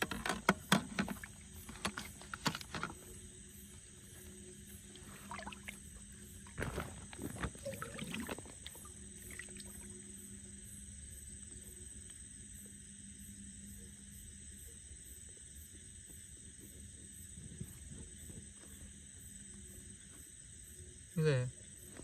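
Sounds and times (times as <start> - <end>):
water splashing and sloshing: 0.0 - 10.1.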